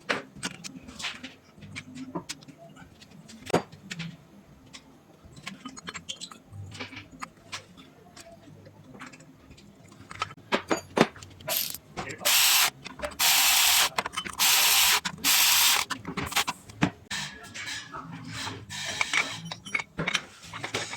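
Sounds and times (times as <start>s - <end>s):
metal tools clinking: 11.5s - 16.5s
power tool bursts: 11.5s - 16.5s.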